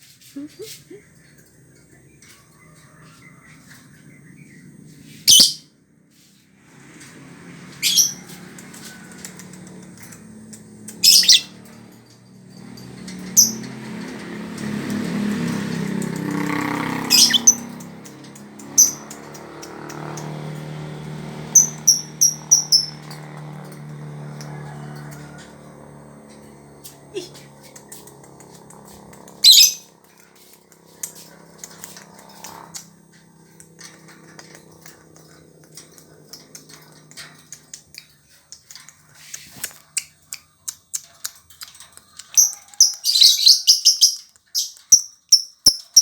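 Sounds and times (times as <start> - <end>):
bird chirping: 10.4 - 11.8, 15.0 - 20.5, 21.4 - 23.1, 27.1 - 29.9, 40.7 - 46.0.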